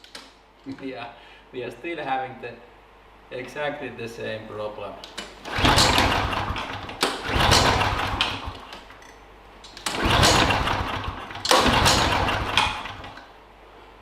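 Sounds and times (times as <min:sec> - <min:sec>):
lawnmower recoil starter cranking: 0:05.5 - 0:08.7, 0:09.8 - 0:13.2.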